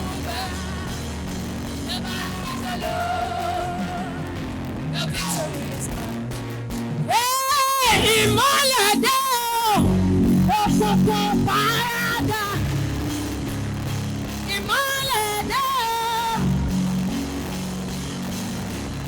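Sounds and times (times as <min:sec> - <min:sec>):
bending melodic lead line: 0:07.9 - 0:14.8
worship band sustained chords: 0:07.9 - 0:19.0.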